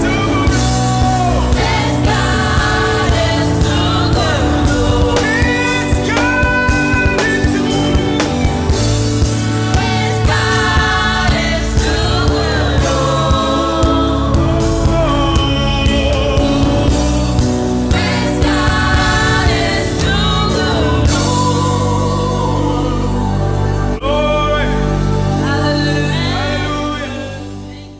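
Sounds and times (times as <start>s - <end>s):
steady drum beat: 0.0s - 21.9s
band playing: 0.0s - 27.9s
group singing in harmony: 0.0s - 27.9s.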